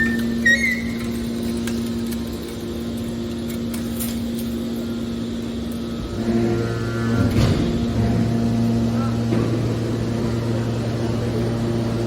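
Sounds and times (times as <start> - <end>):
high squeal: 0.0 - 1.2
metal baler humming: 0.0 - 12.0.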